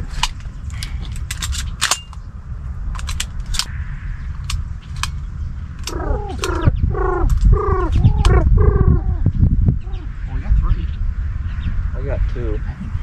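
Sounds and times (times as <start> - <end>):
gear clicking and rattling: 0.0 - 2.2, 2.9 - 3.7, 5.8 - 6.6
wind buffeting microphone: 0.0 - 13.0
bird harsh calls: 3.6 - 13.0.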